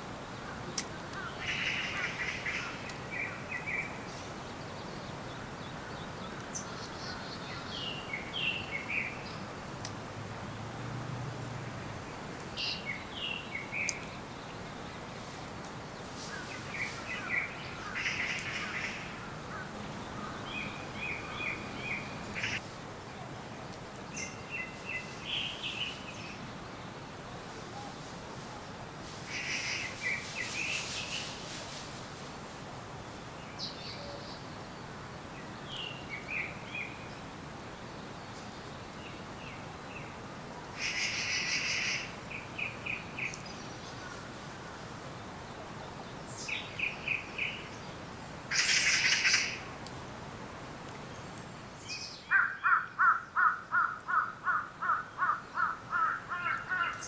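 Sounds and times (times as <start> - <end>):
faint steady hiss: 0.0 - 57.0
rapid low bird calls: 0.4 - 9.7, 11.7 - 22.6, 27.6 - 31.6, 40.7 - 49.8, 51.8 - 57.0
birds calling and chirping: 0.4 - 9.9, 11.8 - 22.6, 29.3 - 31.4, 40.8 - 49.7, 51.2 - 57.0.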